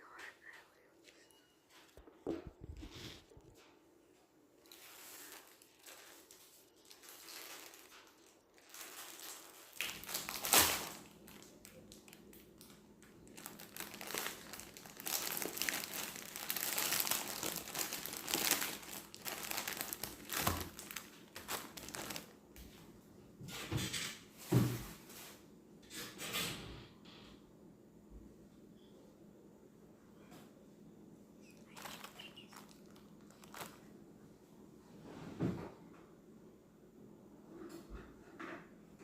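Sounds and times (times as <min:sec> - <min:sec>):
plastic wrapper crinkling: 0:04.6 - 0:22.4, 0:31.4 - 0:34.0.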